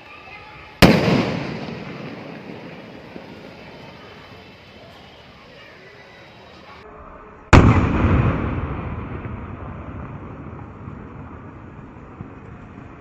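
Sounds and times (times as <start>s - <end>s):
firework boom echoing: 0.8s - 4.9s, 7.6s - 13.0s.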